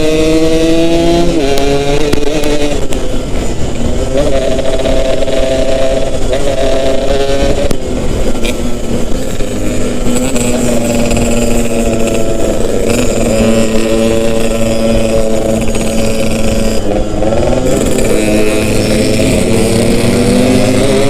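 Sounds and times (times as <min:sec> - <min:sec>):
two-stroke motorcycle engine running: 0:00.0 - 0:21.0.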